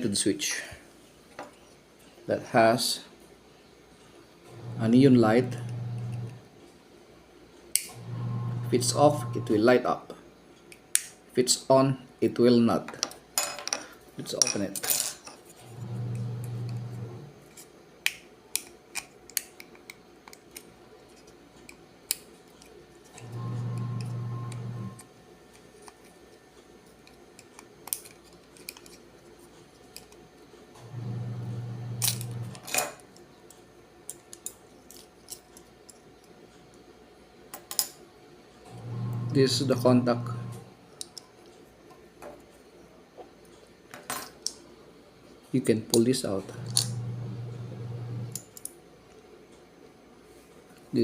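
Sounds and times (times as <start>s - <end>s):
low buzzing whir: 4.5s - 6.4s, 7.9s - 9.6s, 15.7s - 17.3s, 23.2s - 25.0s, 30.8s - 32.6s, 38.7s - 40.8s, 46.4s - 48.4s.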